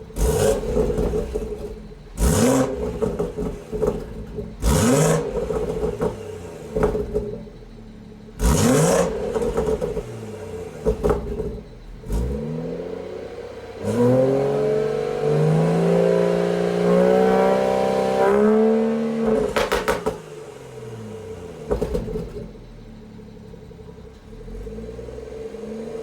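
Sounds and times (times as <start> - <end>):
sharp exhaust pops: 0.0 - 12.6, 17.1 - 20.6, 21.6 - 22.8
car engine idling: 0.0 - 26.0
car engine revving: 0.0 - 26.0.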